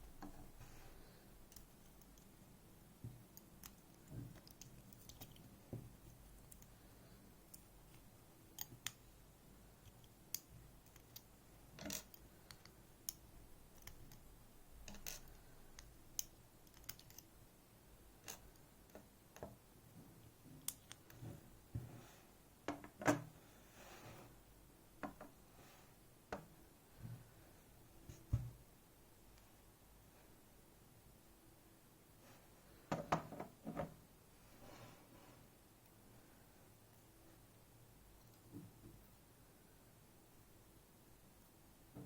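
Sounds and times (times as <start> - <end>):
small metallic clicks and taps: 7.5 - 9.0, 9.8 - 17.3.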